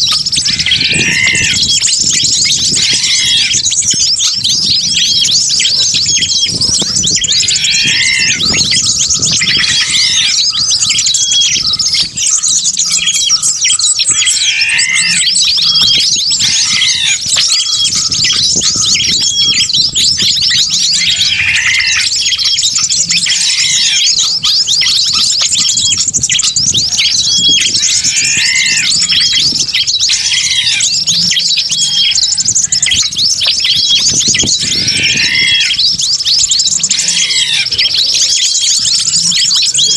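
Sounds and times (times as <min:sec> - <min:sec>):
loud arched bird call: 0:00.0 - 0:02.0, 0:02.7 - 0:03.6, 0:07.5 - 0:08.6, 0:09.2 - 0:11.6, 0:13.8 - 0:18.0, 0:21.0 - 0:22.4, 0:23.2 - 0:24.2, 0:27.3 - 0:32.2, 0:33.8 - 0:35.9, 0:36.8 - 0:37.8
chatter of small birds: 0:00.0 - 0:39.9.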